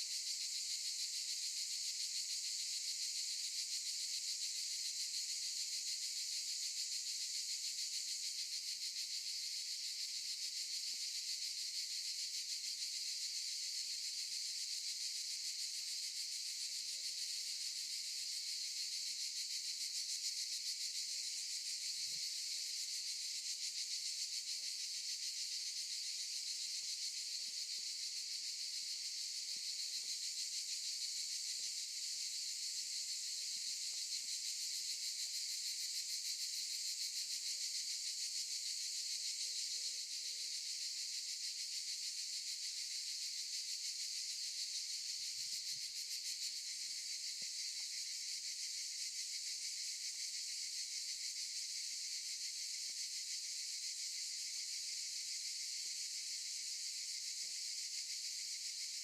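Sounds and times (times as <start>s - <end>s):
cicadas buzzing: 18.0s - 37.2s, 38.3s - 58.9s.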